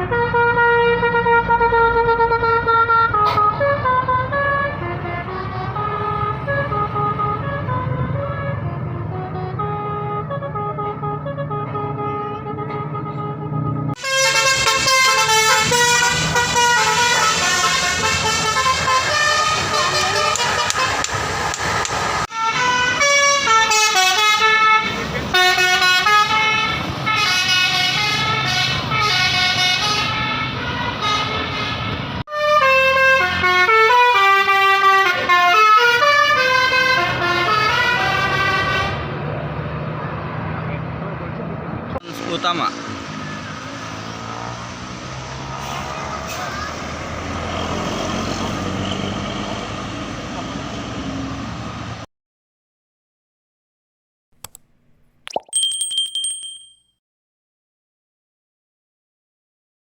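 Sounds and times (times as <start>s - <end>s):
bus engine running: 0.0s - 32.2s
multi-tone musical bus horn: 0.0s - 39.2s.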